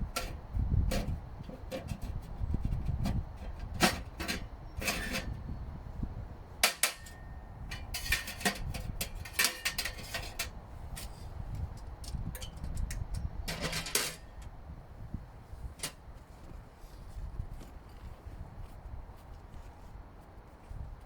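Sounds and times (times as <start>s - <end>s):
camping gear clattering: 6.6s - 11.1s, 12.0s - 14.5s.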